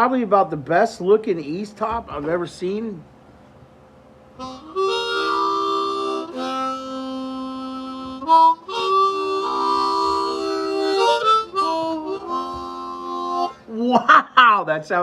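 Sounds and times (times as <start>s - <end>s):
harmonica chords: 4.3s - 14.0s.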